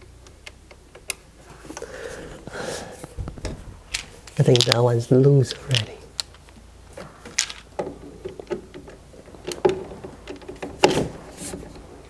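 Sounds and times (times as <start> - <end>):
clicks and knocks: 3.1 - 11.1.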